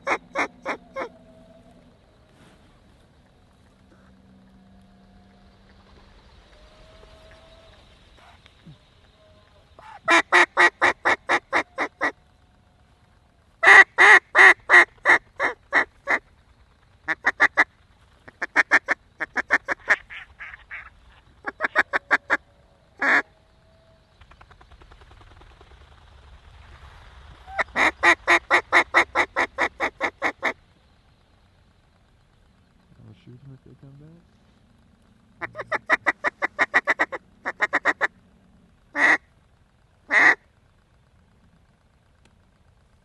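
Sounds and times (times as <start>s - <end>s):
duck call quacks: 13.6s - 16.2s, 23.0s - 23.2s, 35.4s - 38.1s, 39.0s - 39.3s, 40.1s - 40.4s.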